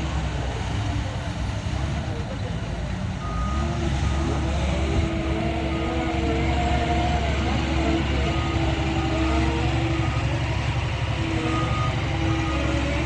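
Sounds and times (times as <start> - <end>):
diesel engine droning: 0.0 - 13.0
hydraulics whining: 3.2 - 13.0.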